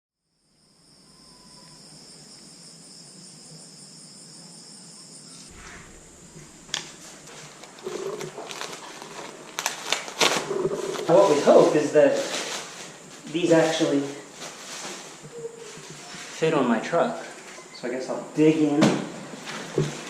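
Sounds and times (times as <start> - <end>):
insects trilling: 0.2 - 20.0
rustling: 5.5 - 17.6.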